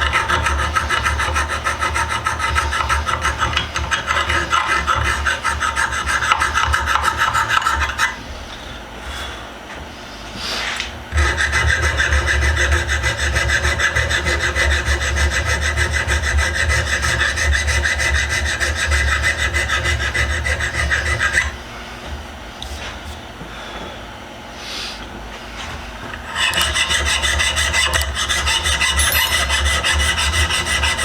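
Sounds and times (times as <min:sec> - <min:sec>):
power tool grinding metal: 0:00.0 - 0:08.1, 0:11.2 - 0:21.6, 0:26.2 - 0:31.0.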